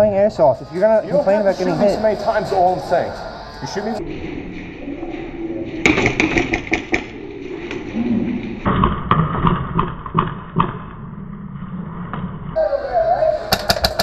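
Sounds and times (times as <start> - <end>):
low rumble of movement: 3.2 - 8.7.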